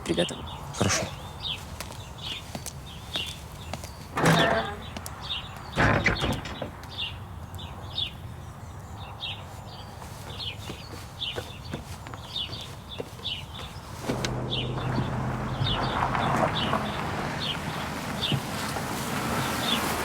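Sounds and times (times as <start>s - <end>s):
small birds chirping: 0.0s - 20.0s
low steady hum: 14.0s - 18.2s.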